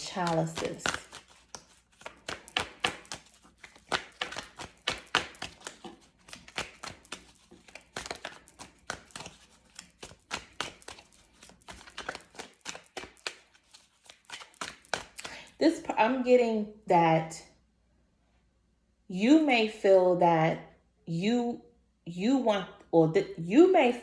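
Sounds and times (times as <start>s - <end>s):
cards being shuffled by hand: 0.0s - 15.6s.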